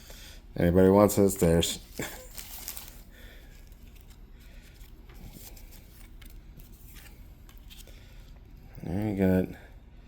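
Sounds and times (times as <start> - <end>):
trading cards rustling: 1.9 - 9.2.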